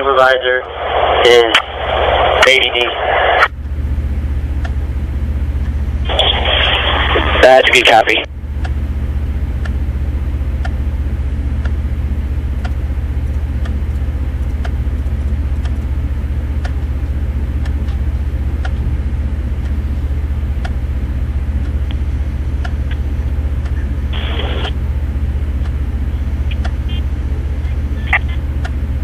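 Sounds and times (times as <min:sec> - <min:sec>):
radio static burst: 0:00.0 - 0:03.5, 0:06.0 - 0:08.3, 0:24.1 - 0:24.8, 0:26.1 - 0:28.5
faint ticking: 0:11.6 - 0:29.0.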